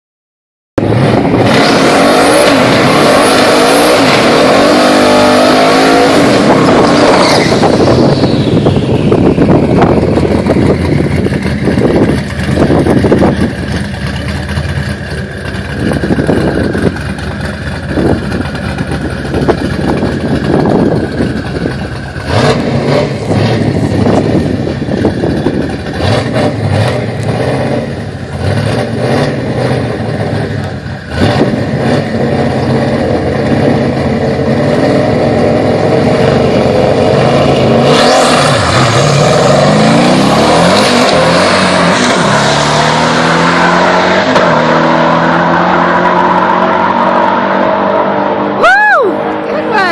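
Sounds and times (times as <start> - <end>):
car engine rev blips: 0.8 - 49.9
exhaust cracks: 6.4 - 43.3.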